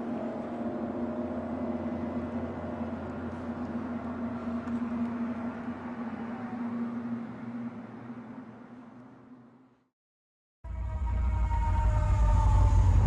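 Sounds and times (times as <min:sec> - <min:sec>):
low droning hum: 0:00.0 - 0:09.8, 0:10.7 - 0:13.0.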